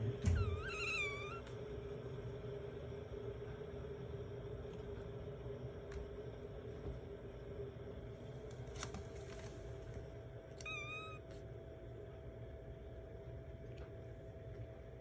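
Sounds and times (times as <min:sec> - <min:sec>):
kitten meowing: 0:00.3 - 0:01.5, 0:10.6 - 0:11.3.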